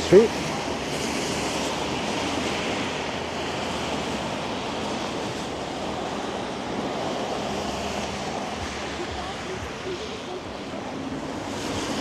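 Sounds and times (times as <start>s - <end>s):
passing traffic: 0.0s - 12.0s
wind: 0.0s - 12.0s.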